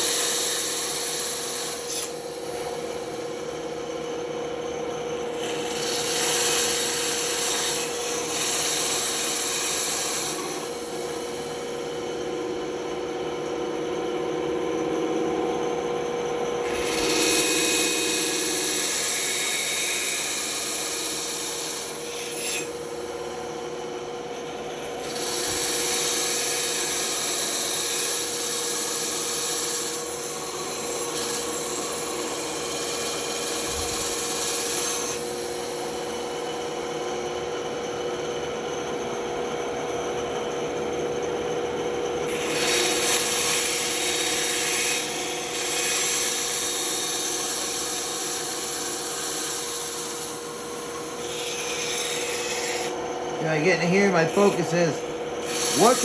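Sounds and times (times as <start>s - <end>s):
saw blade cutting wood: 0.0s - 2.6s, 5.3s - 11.4s, 16.6s - 22.9s, 25.0s - 35.4s, 42.3s - 56.0s
band saw humming: 14.7s - 23.9s, 47.7s - 56.0s.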